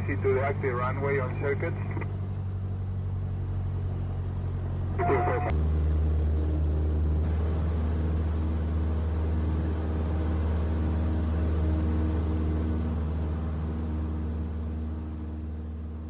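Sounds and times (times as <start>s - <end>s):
filtered radio voice: 0.0s - 2.1s, 5.0s - 5.5s
aircraft engine drone: 0.0s - 16.0s
radio transmission click: 1.3s - 2.1s.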